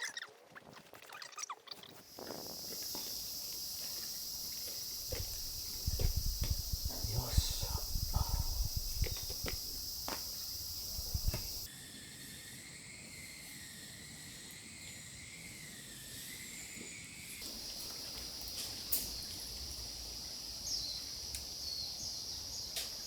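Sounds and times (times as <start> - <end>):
wavering insect buzz: 2.0 - 11.7
high-pitched insect chorus: 2.1 - 23.0.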